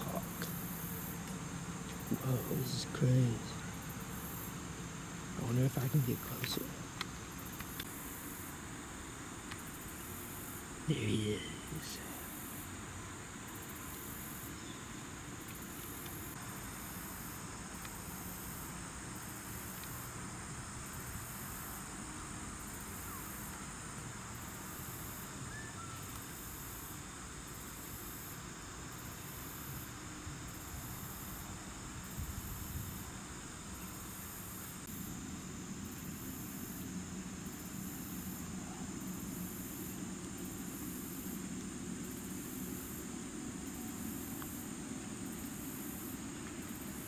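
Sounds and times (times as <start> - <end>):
insect high trill: 0.0 - 47.0
insect pulsing buzz: 0.0 - 47.0.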